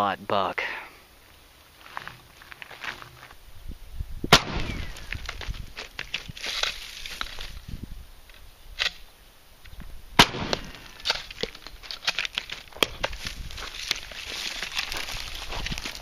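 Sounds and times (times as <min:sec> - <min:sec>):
loud shotgun blast: 0:04.3 - 0:05.0, 0:10.2 - 0:11.0.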